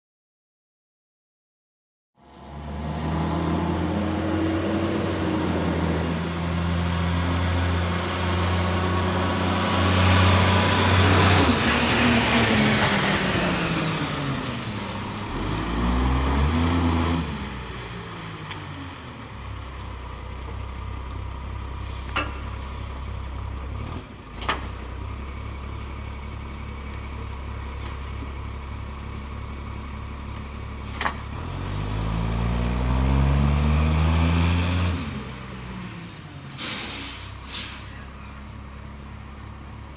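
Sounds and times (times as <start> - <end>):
diesel engine running and revving: 2.2 - 39.9
high squeals: 11.7 - 15.2, 18.1 - 21.6, 26.1 - 27.3, 35.6 - 38.1.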